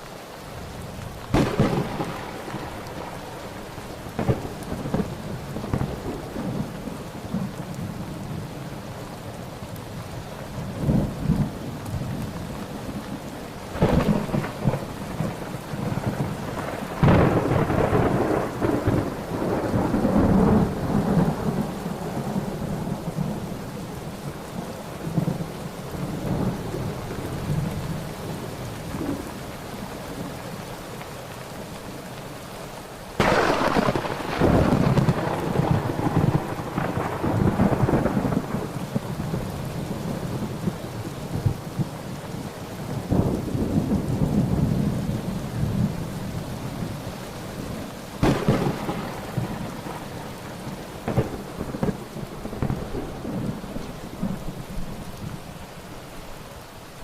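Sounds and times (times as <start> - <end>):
heavy rain: 0.0 - 57.0
thunder: 1.3 - 3.5, 4.1 - 7.5, 13.7 - 23.3, 33.2 - 41.9, 48.2 - 54.9.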